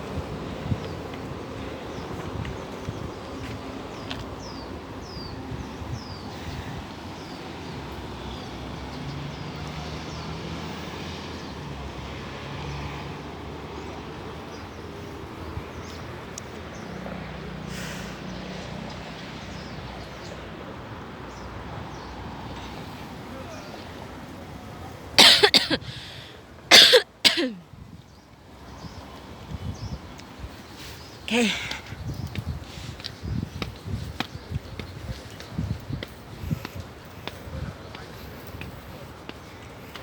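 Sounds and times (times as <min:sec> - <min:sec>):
distant traffic hum: 0:00.0 - 0:40.0.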